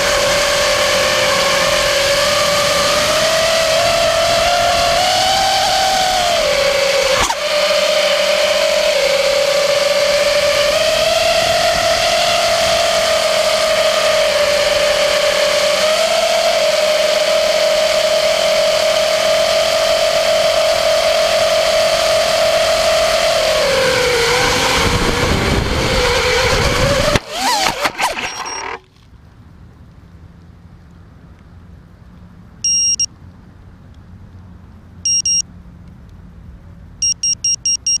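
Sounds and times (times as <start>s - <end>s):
quadcopter motors whining: 0.0s - 29.0s, 32.6s - 33.1s, 35.1s - 35.4s.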